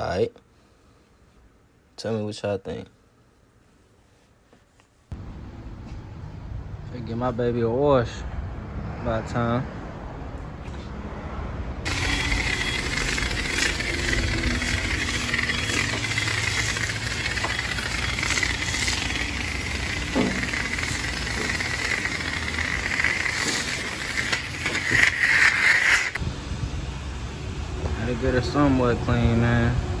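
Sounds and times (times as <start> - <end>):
high-pressure water spray hissing: 11.9 - 26.2
motor running: 11.9 - 26.2.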